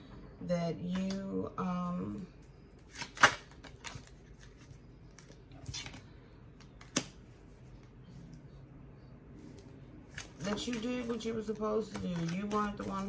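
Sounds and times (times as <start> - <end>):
cards rustling and snapping: 2.8 - 7.2, 9.6 - 13.0.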